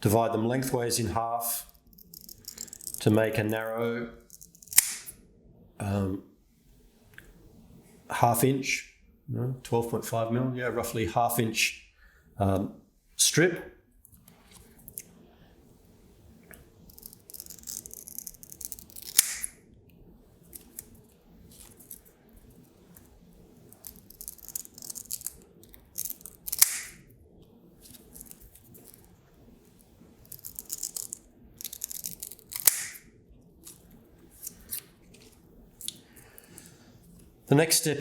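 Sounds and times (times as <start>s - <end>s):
scissors snipping tape: 4.3s - 5.2s, 16.9s - 19.6s, 23.7s - 27.0s, 30.2s - 33.1s.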